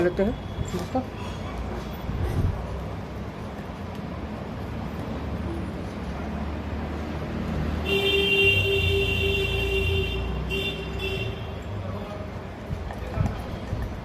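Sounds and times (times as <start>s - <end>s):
road traffic rumble: 0.0s - 14.0s
vehicle horn: 7.8s - 11.6s.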